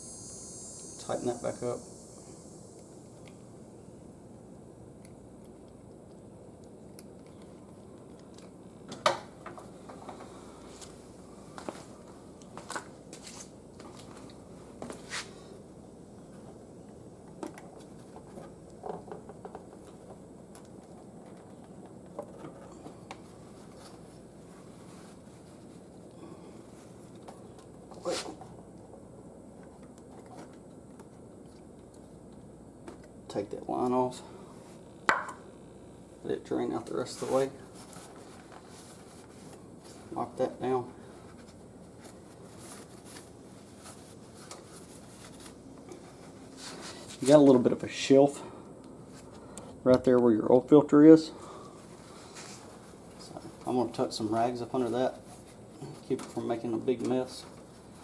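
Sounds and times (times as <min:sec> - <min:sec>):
brief hiss: 0:00.0 - 0:03.0
faint background hum: 0:00.0 - 0:58.0.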